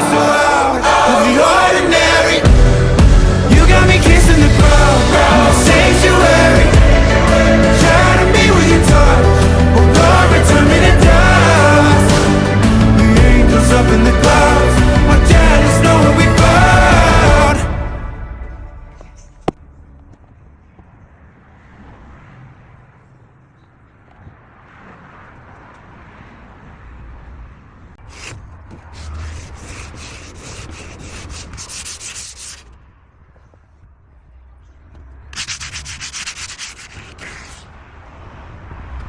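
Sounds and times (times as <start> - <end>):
sanding wood filler: 28.0 - 32.7, 35.4 - 37.7.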